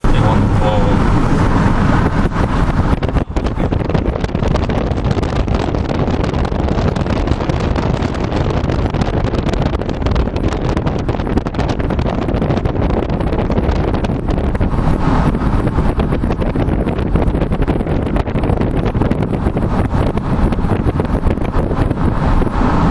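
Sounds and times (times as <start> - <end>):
wind buffeting microphone: 0.0 - 22.9.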